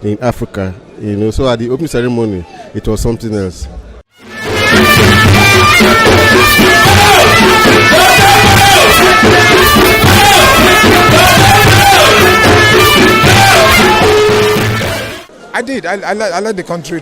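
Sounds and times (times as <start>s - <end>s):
sustained instrumental notes: 4.1s - 15.3s
steady drum beat: 4.2s - 15.3s.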